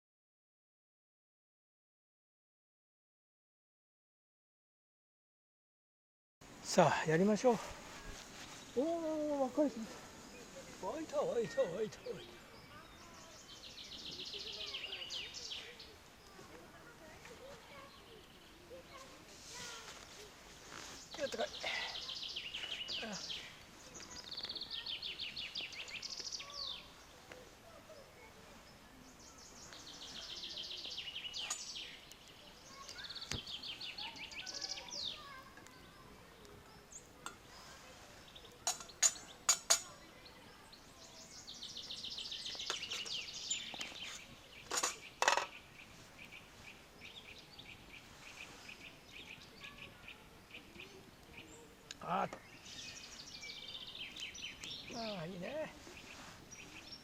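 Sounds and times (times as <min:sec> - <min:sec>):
bird song trills: 0:08.6 - 0:16.0, 0:20.9 - 0:27.2, 0:28.0 - 0:57.0.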